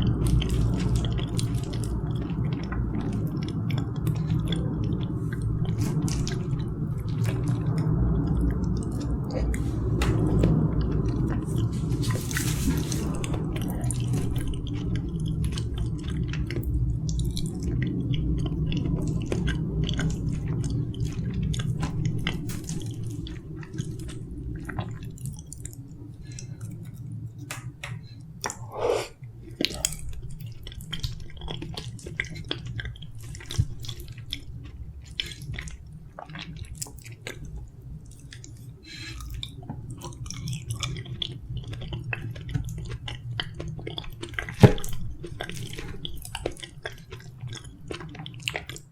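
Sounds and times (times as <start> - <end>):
chewing soft food: 0.0 - 48.9.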